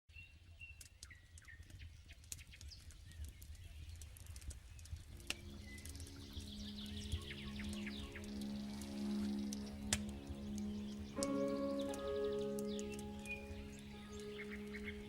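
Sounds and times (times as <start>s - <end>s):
campfire crackling and popping: 0.6s - 15.0s
bird chirps: 5.3s - 15.0s
steady musical tone: 6.2s - 15.0s.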